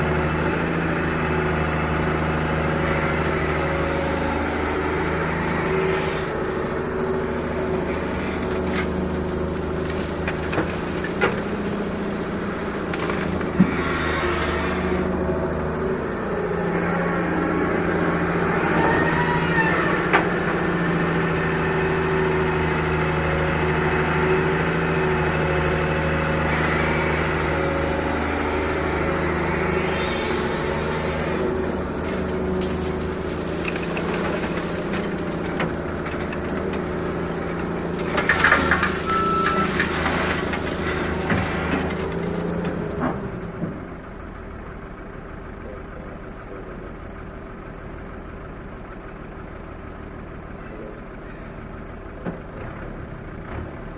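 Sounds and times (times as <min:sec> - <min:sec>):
diesel engine running: 0:00.0 - 0:53.9
hydraulic whine: 0:01.7 - 0:08.5, 0:12.0 - 0:21.6, 0:25.8 - 0:35.5
rattling and knocks of sand and gravel: 0:06.4 - 0:13.8, 0:31.4 - 0:44.0.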